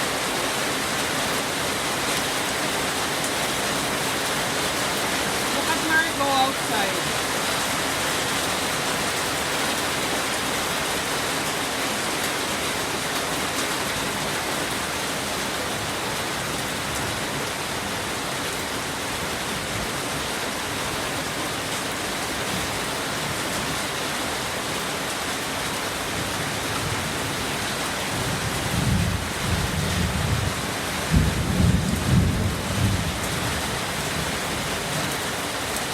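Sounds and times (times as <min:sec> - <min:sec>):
heavy rain: 0:00.0 - 0:35.9
thunder rumbles: 0:28.2 - 0:34.2.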